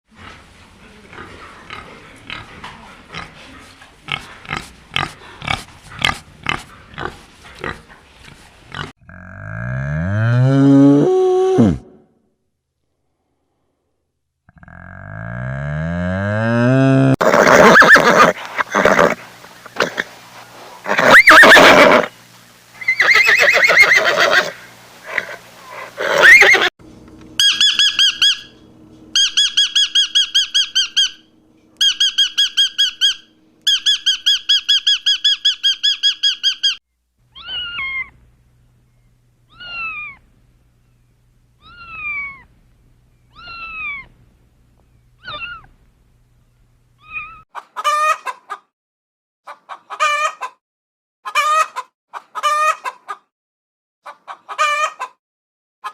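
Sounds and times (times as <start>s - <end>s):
harsh squealing animal calls: 17.2s - 20.1s, 20.8s - 22.2s, 22.8s - 26.7s, 31.8s - 38.2s, 39.5s - 40.2s, 41.6s - 42.5s, 43.3s - 44.1s, 45.2s - 45.7s
short squeaky falling calls: 20.9s - 22.1s, 22.8s - 24.6s, 26.0s - 26.7s, 27.4s - 28.6s, 29.2s - 31.2s, 31.8s - 38.2s, 41.6s - 42.5s, 43.3s - 44.1s, 45.2s - 45.7s
rapid trilled chirping: 27.4s - 28.6s, 29.2s - 31.2s, 31.8s - 36.8s.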